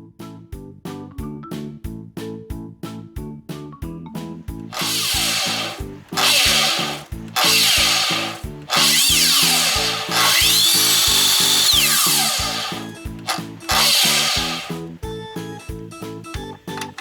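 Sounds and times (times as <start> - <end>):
background music with steady beat: 0.0 - 17.0
miter saw motor whine: 4.7 - 14.9
loud harsh grinding noise: 4.7 - 15.0.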